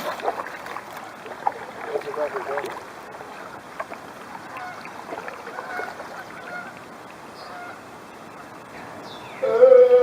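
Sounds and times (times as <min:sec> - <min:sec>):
geese honking: 0:05.5 - 0:06.8, 0:07.4 - 0:07.8.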